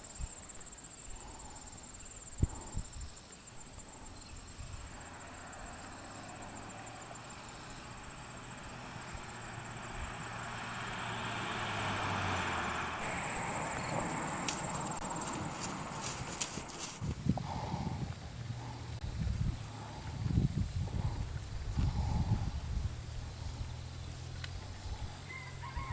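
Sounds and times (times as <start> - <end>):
crickets chirring: 0.0 - 25.9
rushing noise with low hum: 6.5 - 25.9.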